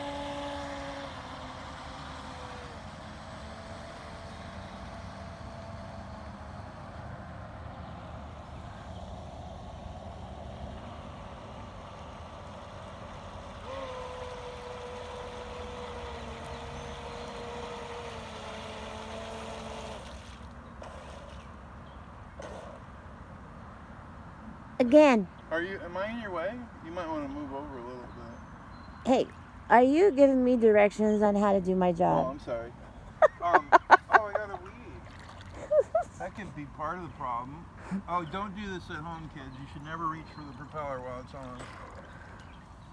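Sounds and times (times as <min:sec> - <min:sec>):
motor humming: 0:00.0 - 0:22.9.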